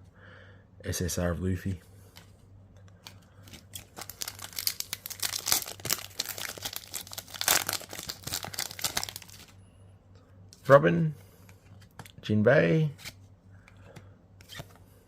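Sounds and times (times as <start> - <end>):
foil wrapper tearing and crinkling: 3.5 - 9.5.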